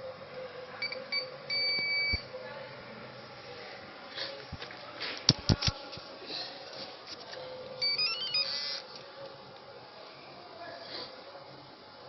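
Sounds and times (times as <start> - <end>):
door lock beeping chime: 7.8 - 8.6.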